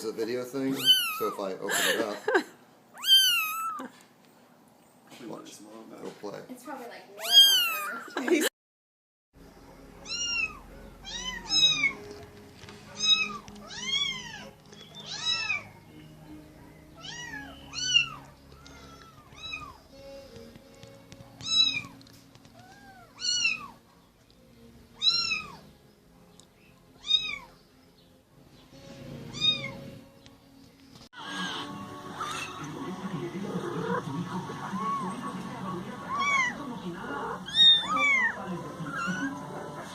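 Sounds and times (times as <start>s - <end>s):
faint background music: 0.0s - 8.5s, 9.4s - 39.9s
cat meowing: 0.7s - 1.5s, 2.9s - 3.9s, 7.2s - 8.2s, 10.0s - 12.0s, 13.0s - 15.8s, 17.0s - 19.8s, 21.4s - 23.8s, 25.0s - 25.6s, 27.0s - 27.6s, 29.3s - 29.9s, 31.2s - 32.6s, 36.0s - 39.4s.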